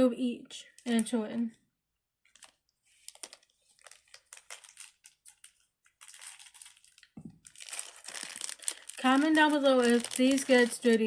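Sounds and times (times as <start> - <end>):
plastic crinkling: 2.2 - 11.0
plastic toys rustling and clicking: 2.2 - 11.0.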